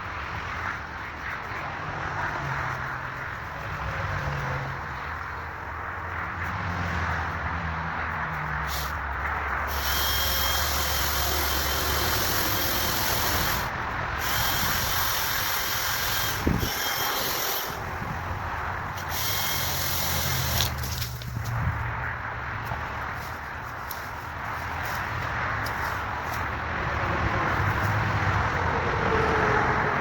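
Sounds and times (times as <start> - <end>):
chainsaw cutting wood: 8.7 - 9.0, 9.6 - 21.2.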